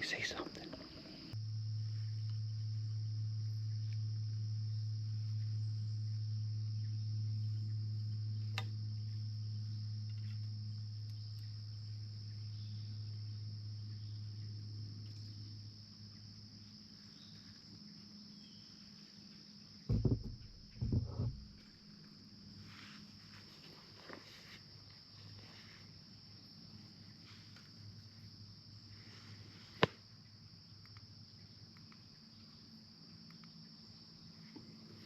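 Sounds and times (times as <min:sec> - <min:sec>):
crickets chirping: 0:00.0 - 0:35.0
low steady hum: 0:00.9 - 0:17.4, 0:19.9 - 0:21.8
dull thumps: 0:19.9 - 0:21.6.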